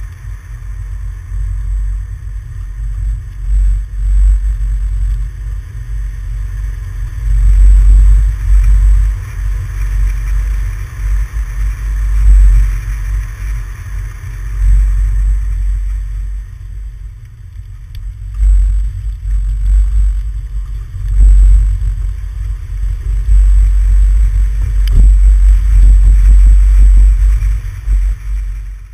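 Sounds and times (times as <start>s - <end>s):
wind buffeting microphone: 0.0s - 28.9s.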